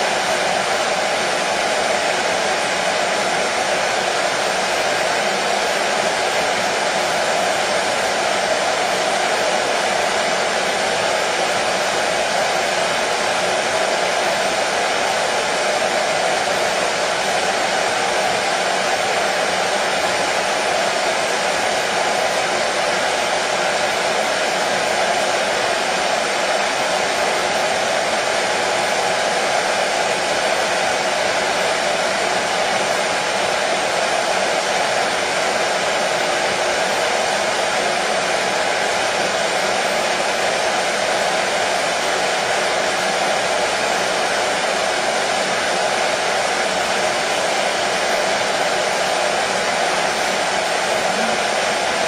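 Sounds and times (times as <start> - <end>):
hair dryer running: 0.0 - 52.0.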